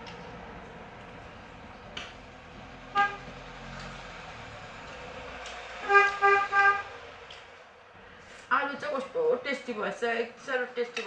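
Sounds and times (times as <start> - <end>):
vehicle horn honking: 2.9 - 3.3, 5.8 - 6.9.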